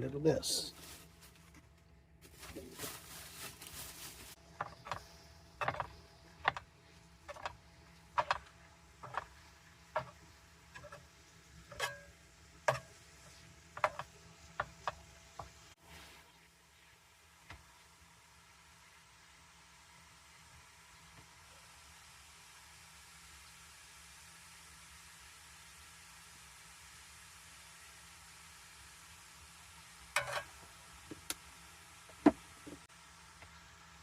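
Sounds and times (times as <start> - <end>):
cooking utensils clicking: 5.6 - 6.6, 8.2 - 9.3, 30.2 - 30.6.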